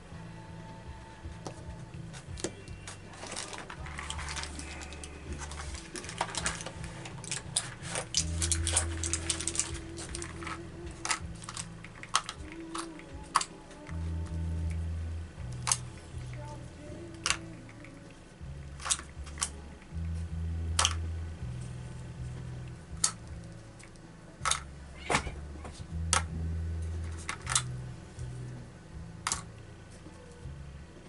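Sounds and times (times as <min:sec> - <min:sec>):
low humming tones: 0:00.0 - 0:31.0.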